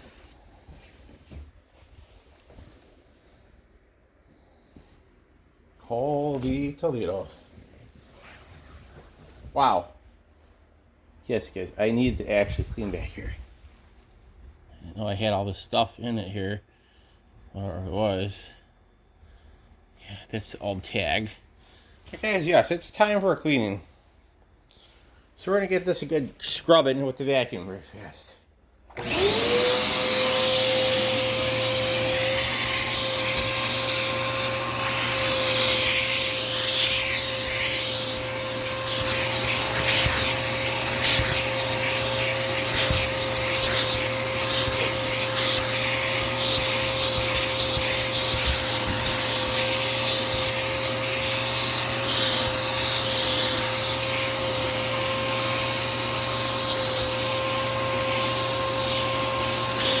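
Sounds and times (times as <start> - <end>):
nozzle rubbing on fabric: 7.7 - 9.4
vacuum cleaner motor whine: 28.9 - 60.0.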